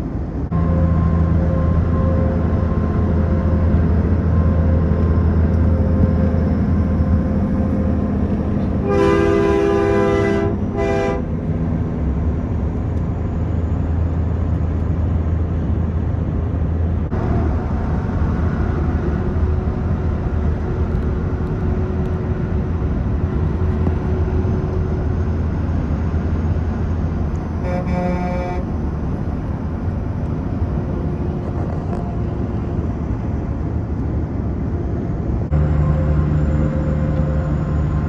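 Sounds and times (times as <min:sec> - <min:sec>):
passing train rumble: 0:00.0 - 0:38.0
locomotive air horn: 0:00.5 - 0:06.1, 0:08.5 - 0:11.4, 0:27.6 - 0:28.8, 0:35.6 - 0:38.0.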